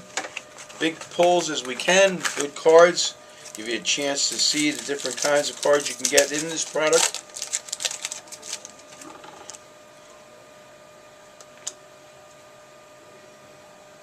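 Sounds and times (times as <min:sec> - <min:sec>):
faint steady hum: 0:00.0 - 0:14.0
wrappers crinkling: 0:00.2 - 0:09.6.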